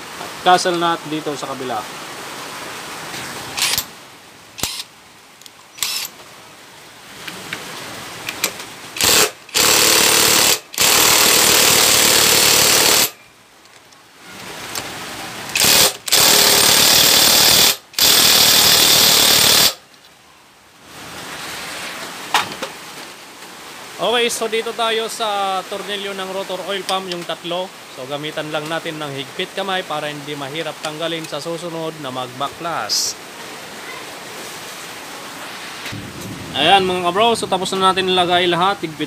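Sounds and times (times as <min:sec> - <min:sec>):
impact wrench bursts: 0:04.6 - 0:04.9, 0:05.8 - 0:06.1, 0:08.3 - 0:13.2, 0:15.5 - 0:19.8.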